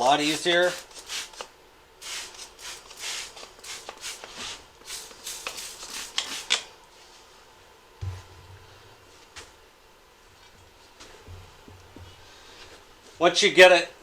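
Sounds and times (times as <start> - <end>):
spray bottle squirting: 2.0 - 6.6
low thump: 8.0 - 9.0.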